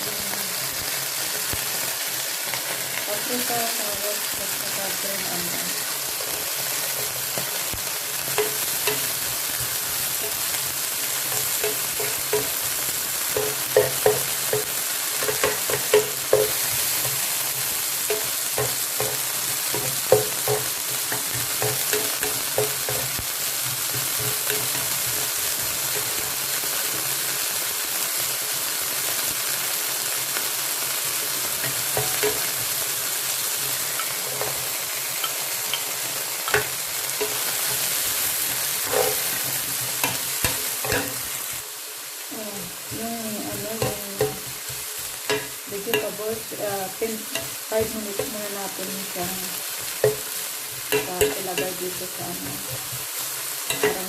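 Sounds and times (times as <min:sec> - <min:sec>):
food sizzling in a pan: 0:00.0 - 0:54.0
spatula scraping a pan: 0:05.4 - 0:27.2, 0:31.5 - 0:41.6.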